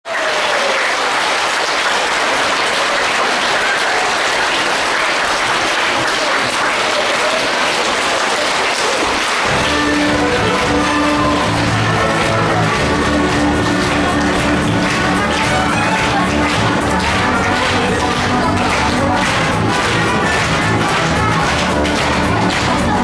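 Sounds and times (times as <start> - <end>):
audience applauding: 0.0 - 23.0
orchestra playing: 9.2 - 23.0.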